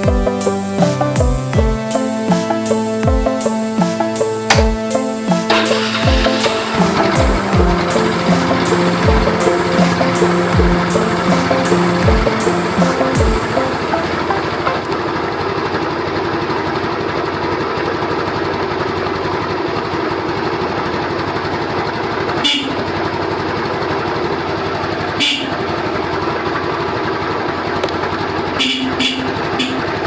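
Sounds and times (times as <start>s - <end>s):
small motorcycle engine idling: 0.0s - 30.0s.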